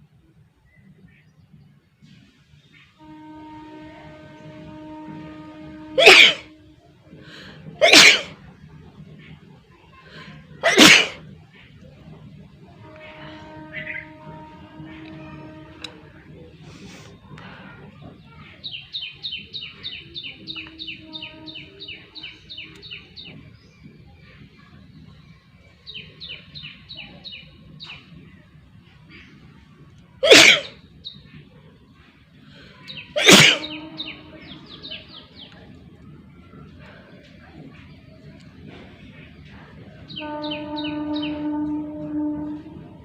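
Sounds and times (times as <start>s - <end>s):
person sneezing: 33.2s - 33.7s.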